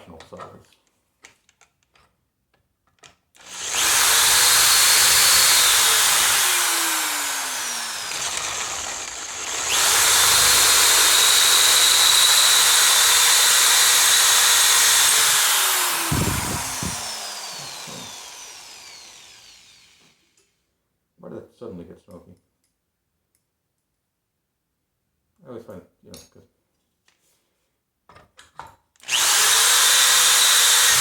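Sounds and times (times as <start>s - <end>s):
drill knocking as it slows: 3.4s - 19.8s, 29.1s - 31.0s
electric drill boring: 3.4s - 20.3s, 29.0s - 31.0s.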